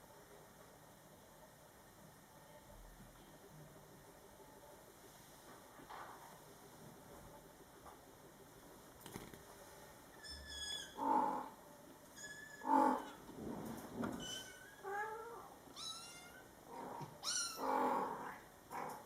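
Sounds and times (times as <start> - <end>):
kittens meowing: 14.2 - 18.0.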